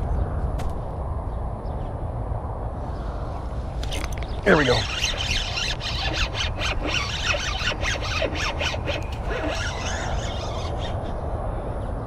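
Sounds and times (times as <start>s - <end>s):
wind on microphone: 0.0s - 12.0s
fishing reel ticking rattle: 3.9s - 10.9s.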